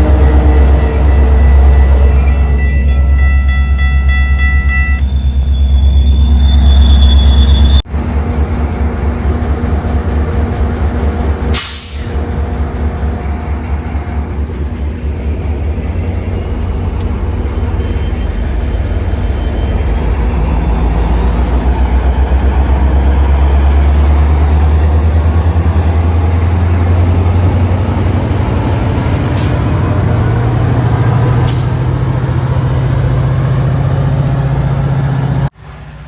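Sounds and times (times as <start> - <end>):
diesel locomotive engine droning: 0.0 - 36.0.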